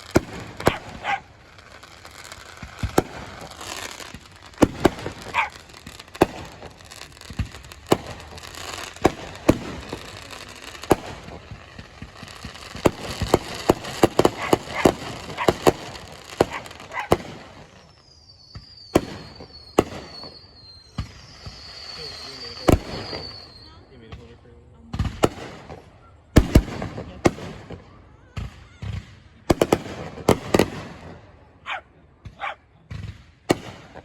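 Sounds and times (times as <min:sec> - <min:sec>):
crackling hiss: 0:00.0 - 0:24.0
fireworks bangs: 0:00.0 - 0:34.0
high wavering whistle: 0:17.8 - 0:23.8.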